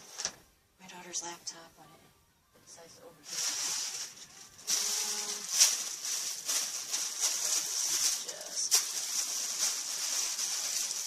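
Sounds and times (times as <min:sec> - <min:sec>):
packaging rustling and crinkling: 0:03.2 - 0:11.0
sharp crackles: 0:03.3 - 0:11.0.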